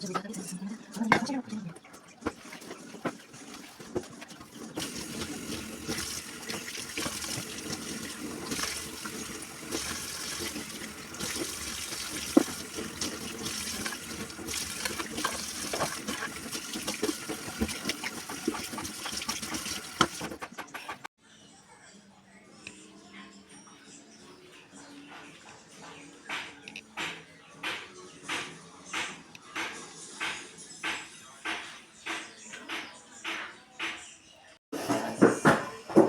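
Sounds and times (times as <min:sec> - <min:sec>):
tap water running into sink: 0:02.2 - 0:20.5.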